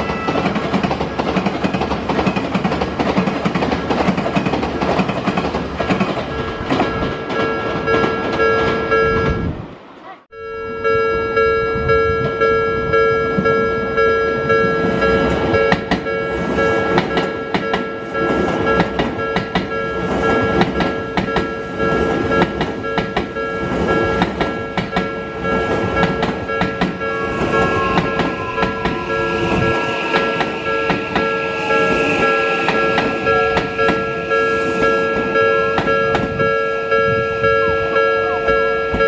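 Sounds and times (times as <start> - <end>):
train wheels clacking over rail joints: 0.0 - 8.9, 14.9 - 31.6
level crossing warning bell: 5.8 - 9.5, 10.3 - 39.0.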